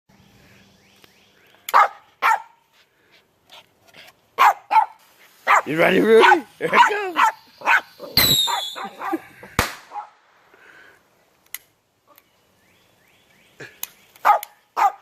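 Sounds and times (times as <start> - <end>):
dog barking: 1.7 - 2.6, 4.4 - 9.2, 9.9 - 10.2, 14.2 - 15.0
firework bang: 8.2 - 8.8, 9.6 - 10.0
firework falling whistle: 8.2 - 9.0.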